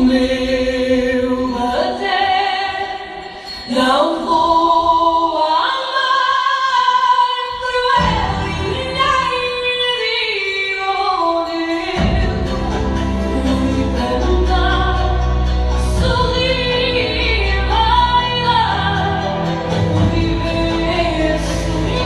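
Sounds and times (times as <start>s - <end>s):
choir-like backing: 0.0s - 22.0s
low accompaniment: 12.0s - 22.0s.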